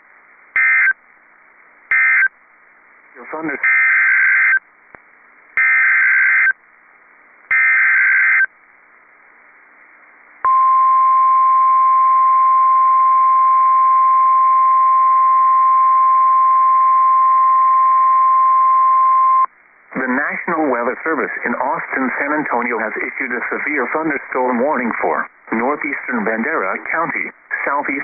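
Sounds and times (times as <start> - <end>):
modem-like data bursts: 0.6 - 1.0, 1.9 - 2.4, 3.3 - 4.6, 5.6 - 6.6, 7.5 - 8.5.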